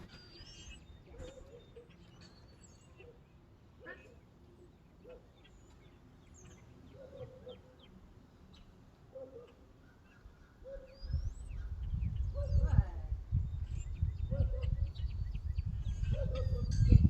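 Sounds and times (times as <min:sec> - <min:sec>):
faint bird chirps: 0:00.0 - 0:17.0
low rumbling on microphone: 0:11.1 - 0:17.0.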